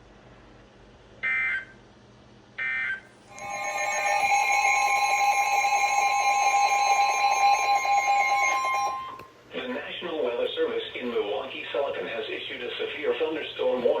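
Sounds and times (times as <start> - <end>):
shrill digital data bursts: 3.3 - 9.2.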